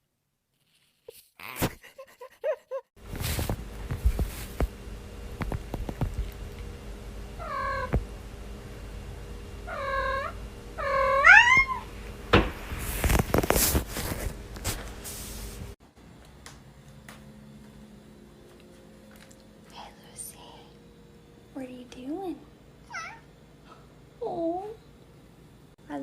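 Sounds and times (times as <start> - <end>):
rustling noise: 0.5 - 1.3, 3.0 - 6.4, 12.3 - 15.8
cat meowing: 9.7 - 11.9, 22.9 - 23.3.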